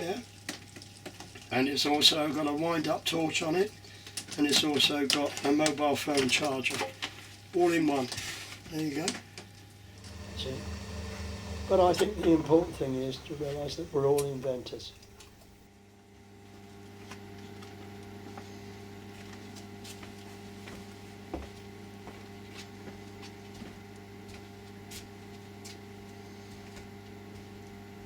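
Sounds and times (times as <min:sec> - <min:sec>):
steady low hum: 0:09.7 - 0:15.7.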